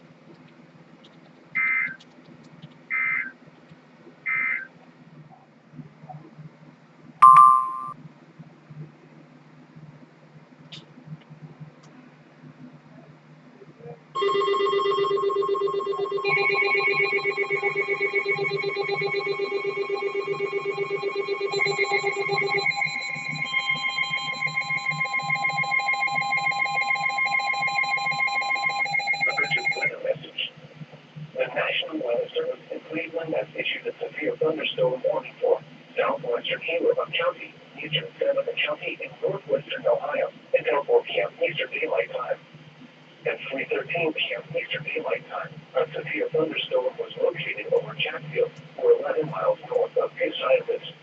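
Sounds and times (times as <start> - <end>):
loud steady beep: 7.2 - 8.0, 14.2 - 29.9
warbling digital data tones: 15.3 - 29.9.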